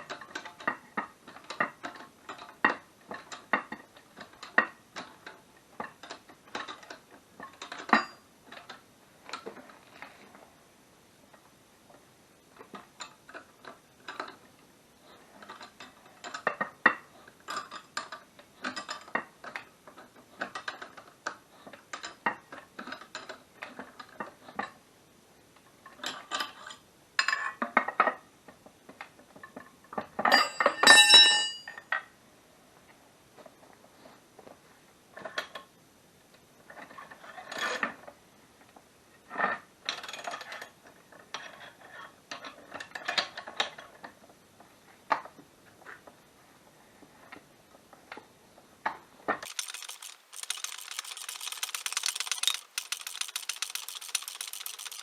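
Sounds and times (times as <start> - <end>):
metal parts clinking and knocking: 49.4 - 55.0.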